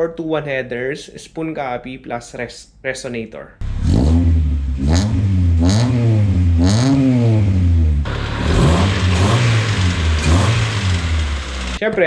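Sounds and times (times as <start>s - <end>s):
car engine revving: 3.6s - 11.8s.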